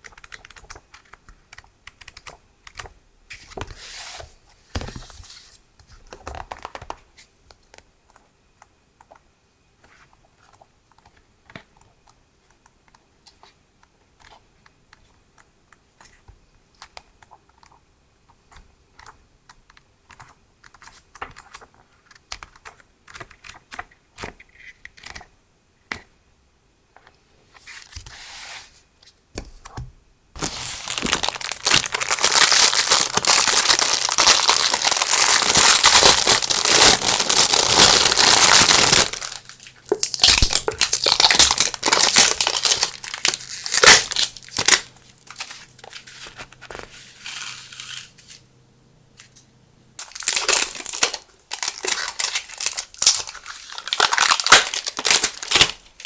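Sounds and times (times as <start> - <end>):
packaging crinkling and tearing: 30.4 - 48.4, 50.0 - 56.0.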